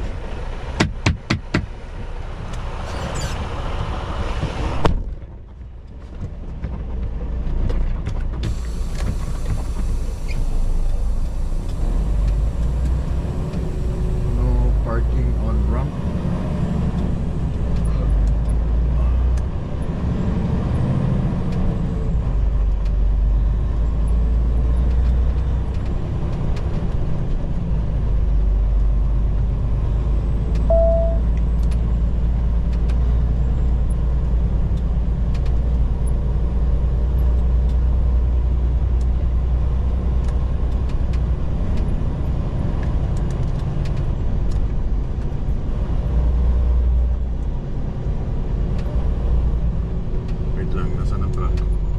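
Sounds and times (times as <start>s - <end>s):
truck engine and road noise: 0.0s - 51.9s
short beep: 30.7s - 31.3s.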